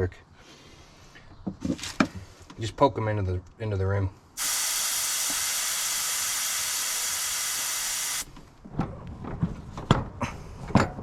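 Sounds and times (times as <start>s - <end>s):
air hissing from tyre valve: 4.4s - 8.3s.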